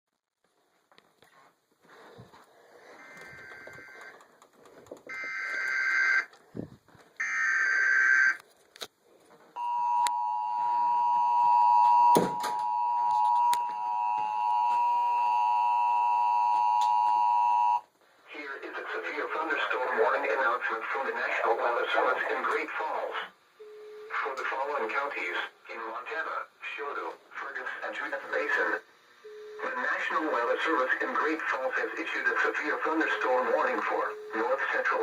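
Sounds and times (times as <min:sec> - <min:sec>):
two-tone attention signal: 0:09.6 - 0:17.8.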